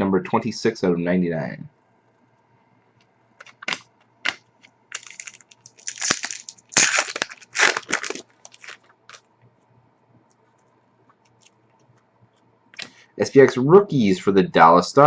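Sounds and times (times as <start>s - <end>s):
card packaging crinkling: 3.4s - 9.3s.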